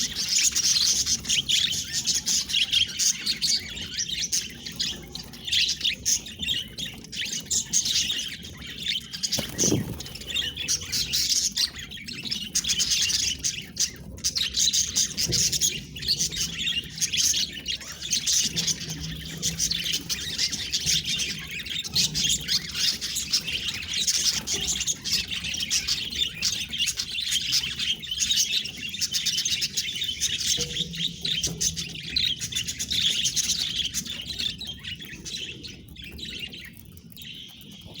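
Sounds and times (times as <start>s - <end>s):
budgerigars chattering: 9.2s - 11.3s.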